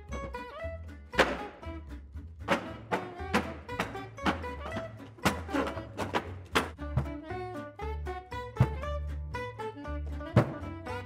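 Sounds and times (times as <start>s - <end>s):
upbeat instrumental music: 0.0s - 11.0s
walking bass line: 0.0s - 11.0s
sharp percussive hits: 1.2s - 1.6s.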